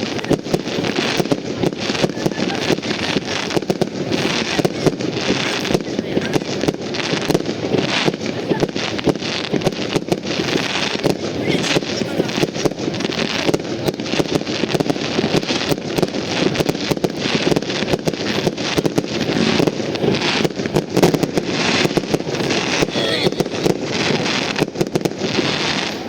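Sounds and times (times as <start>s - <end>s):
fireworks crackling and banging: 0.0s - 26.0s
people's voices: 0.0s - 26.0s.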